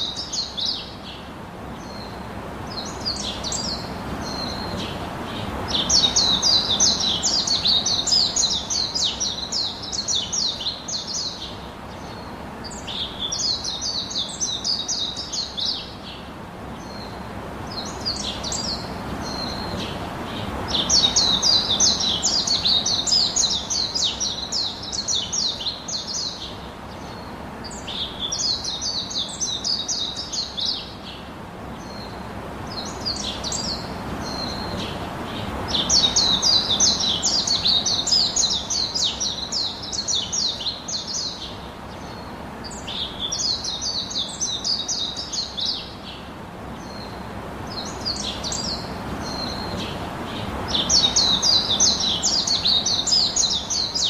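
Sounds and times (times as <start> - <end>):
small birds chirping: 0.0 - 54.0.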